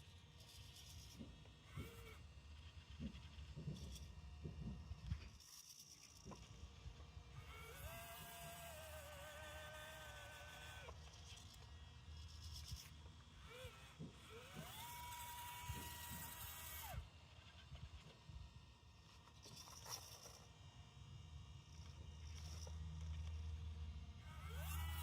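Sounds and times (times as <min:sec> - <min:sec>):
servo motors whining: 0:00.0 - 0:25.0.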